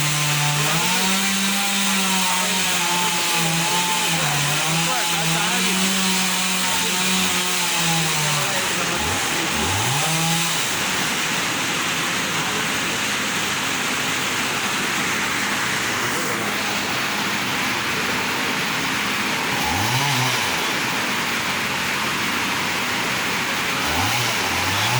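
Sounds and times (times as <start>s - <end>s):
chainsaw revving: 0.0s - 24.9s.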